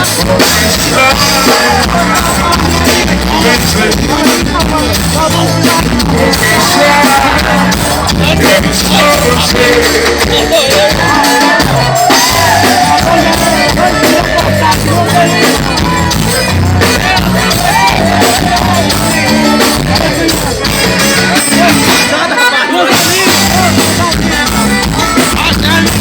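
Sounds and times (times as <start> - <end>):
bass line and steady beat: 0.0 - 22.2, 22.9 - 26.0
person singing: 0.0 - 26.0.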